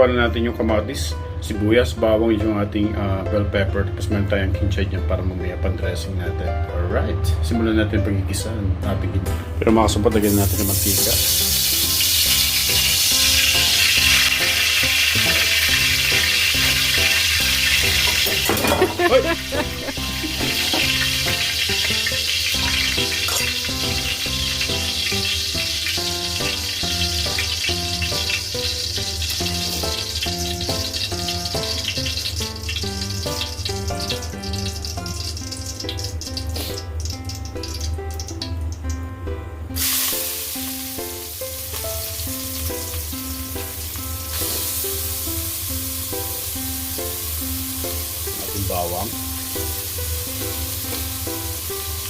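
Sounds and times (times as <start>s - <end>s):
background music: 0.0s - 52.0s
oil sizzling in a frying pan: 10.2s - 39.1s, 39.7s - 52.0s.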